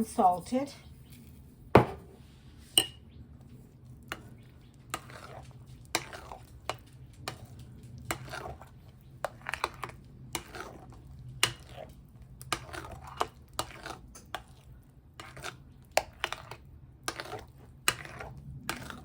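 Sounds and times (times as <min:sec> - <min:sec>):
utensil knocking against a pot: 0:01.8 - 0:02.1.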